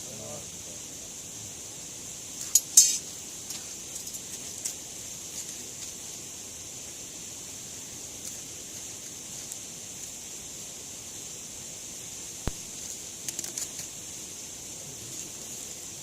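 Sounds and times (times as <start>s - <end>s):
steady high hiss: 0.0s - 16.0s
campfire crackling: 0.1s - 16.0s
fire pop: 12.4s - 13.9s.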